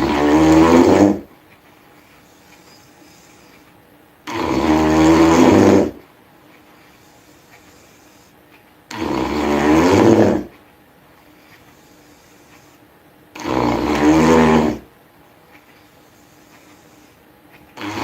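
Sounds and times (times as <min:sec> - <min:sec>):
person snoring loudly: 0:00.0 - 0:01.3, 0:04.3 - 0:06.0, 0:08.9 - 0:10.5, 0:13.4 - 0:14.9, 0:17.8 - 0:18.0.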